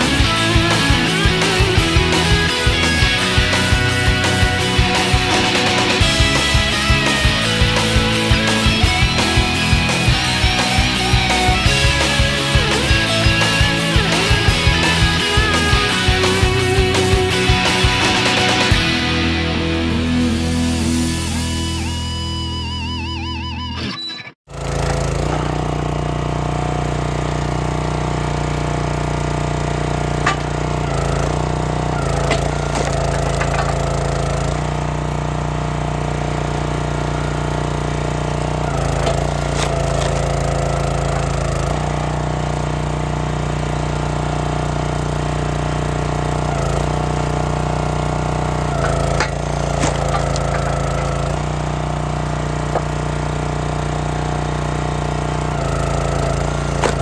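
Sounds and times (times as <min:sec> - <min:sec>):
small gas engine running: 0:00.0 - 0:22.2, 0:24.5 - 0:57.0
wood cracking and snapping: 0:48.8 - 0:51.4.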